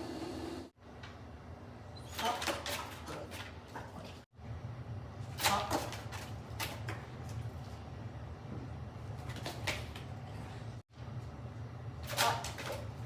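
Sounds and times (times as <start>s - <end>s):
steady low hum: 2.8s - 13.0s.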